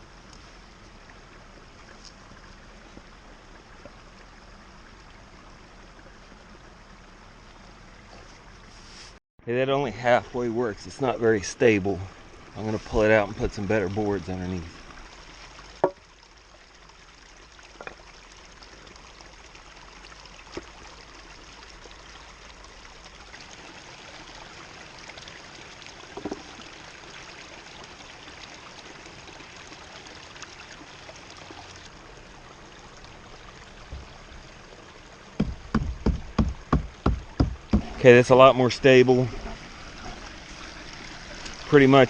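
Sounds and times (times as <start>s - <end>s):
creek water flowing: 0.0s - 42.0s
boards knocking: 35.4s - 38.0s.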